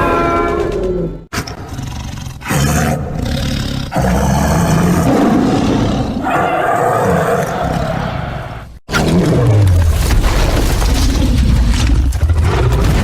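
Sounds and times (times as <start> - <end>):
monster roar: 0.6 - 10.0.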